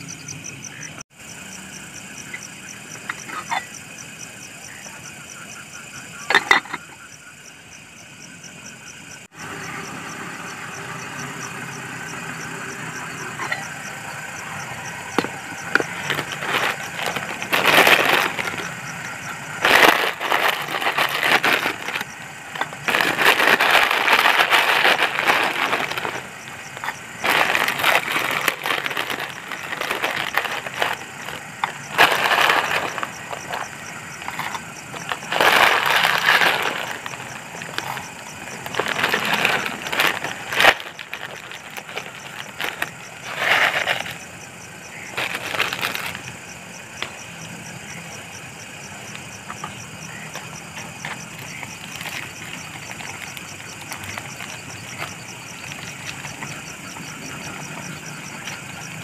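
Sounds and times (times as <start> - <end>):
background hum: 0.0 - 59.0
crinkling handling noise: 14.9 - 44.3, 44.9 - 47.2, 49.1 - 58.9.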